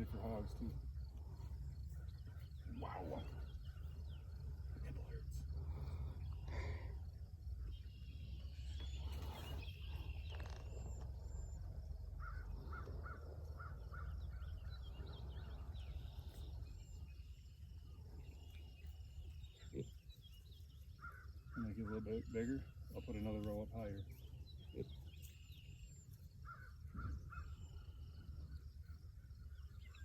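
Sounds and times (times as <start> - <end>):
steady low rumble: 0.0 - 21.6
birds cawing: 12.2 - 15.9, 21.0 - 22.6, 26.4 - 27.9.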